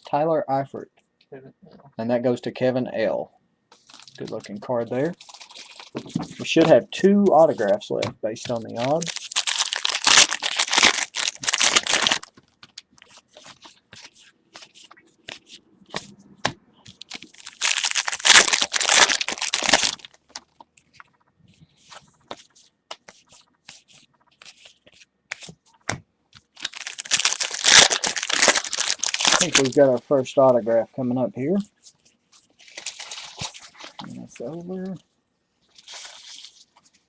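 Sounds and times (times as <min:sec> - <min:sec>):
wrappers tearing and crinkling: 0:05.0 - 0:06.0, 0:08.7 - 0:12.3, 0:17.0 - 0:20.2, 0:26.5 - 0:29.8, 0:32.6 - 0:34.0, 0:35.8 - 0:36.7.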